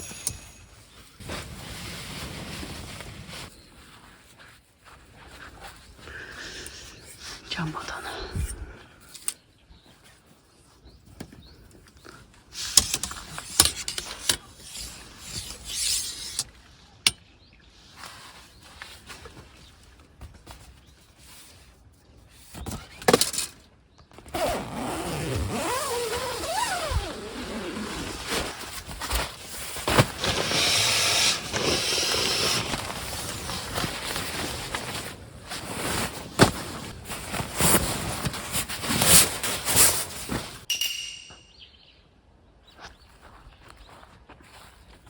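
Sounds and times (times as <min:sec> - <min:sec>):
objects rustling and scraping: 0:00.0 - 0:07.3, 0:09.1 - 0:17.2, 0:26.4 - 0:41.0.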